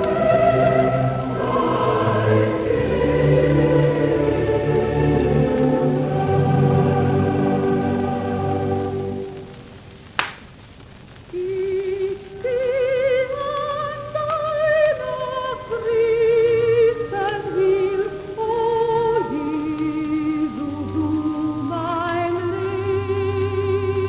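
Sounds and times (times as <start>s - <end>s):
soprano singing with vibrato: 0.0s - 10.0s, 11.3s - 24.0s
record surface crackle: 0.0s - 24.0s
sharp click: 10.2s - 10.5s.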